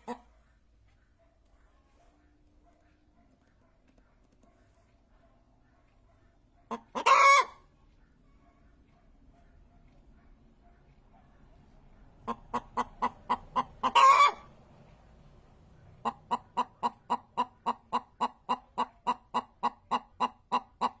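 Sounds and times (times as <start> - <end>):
chicken clucking: 0.0 - 4.9, 5.7 - 8.6, 12.2 - 14.5, 15.8 - 21.0
chicken squawk: 6.7 - 7.7, 12.2 - 14.5.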